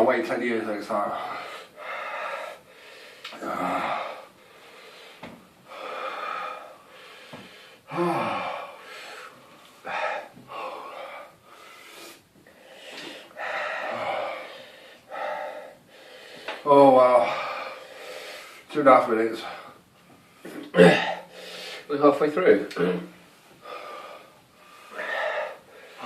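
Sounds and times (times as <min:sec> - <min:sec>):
man breathing hard: 0:01.0 - 0:18.7, 0:19.4 - 0:21.9, 0:23.5 - 0:26.0
man groaning: 0:03.4 - 0:04.2, 0:07.9 - 0:08.7, 0:16.7 - 0:17.5, 0:20.7 - 0:21.3.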